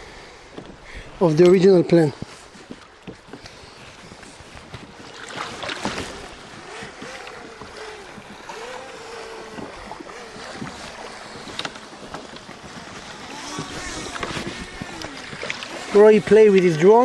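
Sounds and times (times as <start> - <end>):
water lapping against kayak: 0.0 - 17.0
wind on microphone: 3.2 - 17.0
splashes: 4.2 - 17.0.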